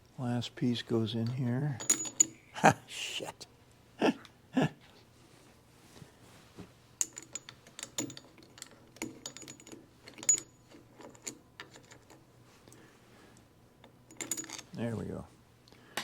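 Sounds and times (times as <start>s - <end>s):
small steel parts clinking: 1.2s - 2.5s, 7.0s - 12.2s, 13.8s - 14.8s.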